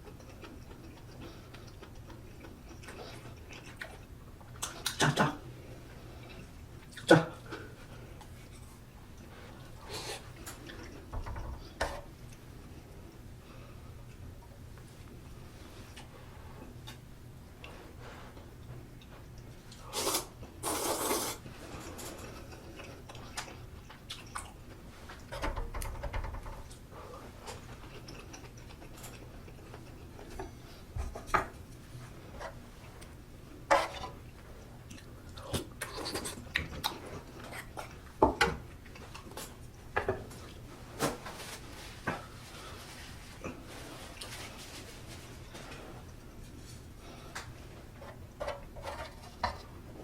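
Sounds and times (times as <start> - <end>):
chewing: 0.0 - 5.0, 21.7 - 24.8, 27.4 - 30.7, 33.9 - 38.1
slurping: 19.8 - 21.5.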